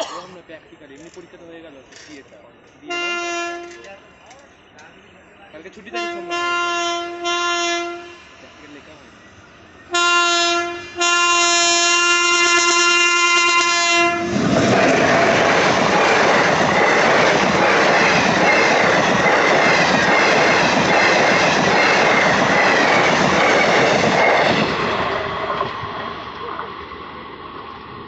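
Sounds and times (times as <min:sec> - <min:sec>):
train rumbling and wheel clatter: 0:00.0 - 0:28.0
train horn blasts: 0:02.8 - 0:03.9, 0:05.9 - 0:08.4, 0:09.9 - 0:14.4.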